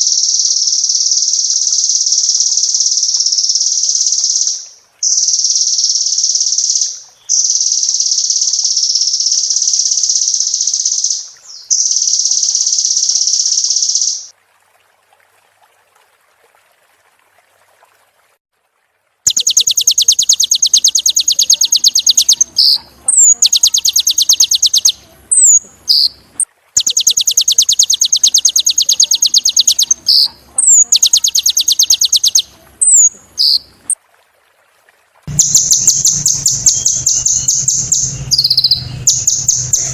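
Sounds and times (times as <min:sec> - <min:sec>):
bird singing buzzing trills: 0:19.3 - 0:26.2, 0:26.8 - 0:33.6, 0:35.3 - 0:39.9
high downward sliding bird notes: 0:19.3 - 0:26.2, 0:26.8 - 0:33.6, 0:35.3 - 0:39.9.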